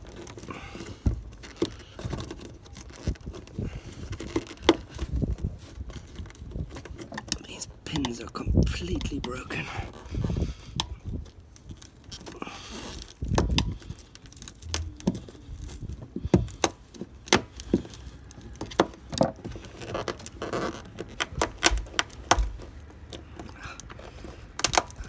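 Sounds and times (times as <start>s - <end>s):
dull thumps: 21.2s - 22.8s.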